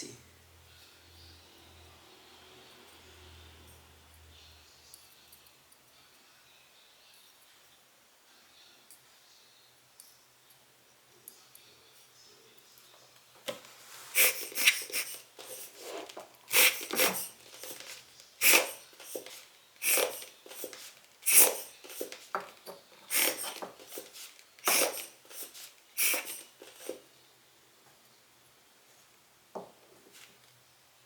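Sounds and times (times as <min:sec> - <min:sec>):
hissing lens cleaning strokes: 0:13.9 - 0:22.4, 0:23.1 - 0:27.0.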